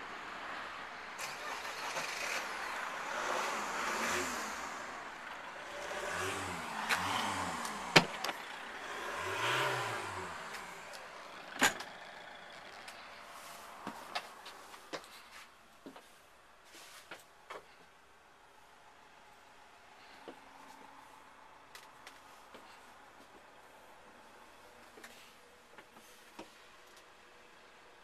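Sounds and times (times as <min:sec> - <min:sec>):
motor vehicles passing: 0:00.0 - 0:15.4.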